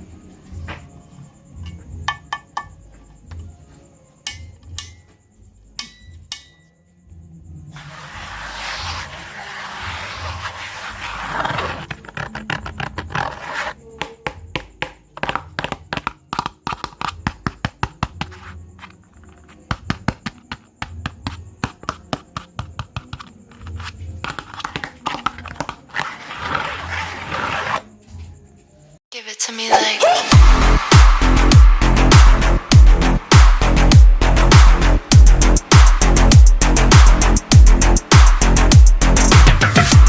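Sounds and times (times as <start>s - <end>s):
scratch-like swishes: 7.8s - 12.0s, 13.1s - 13.8s, 26.0s - 27.9s
deep bass notes: 30.3s - 40.0s.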